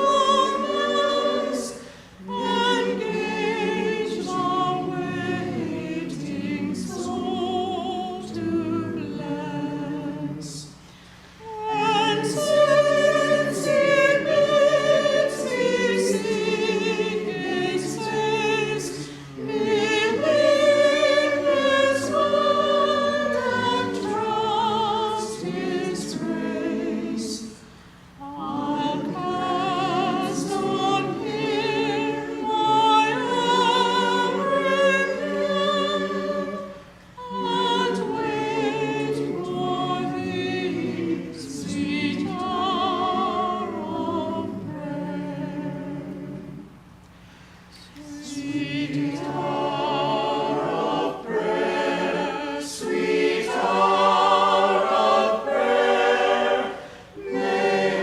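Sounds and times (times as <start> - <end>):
church choir singing: 0.0 - 10.8, 11.4 - 47.0, 47.7 - 58.0.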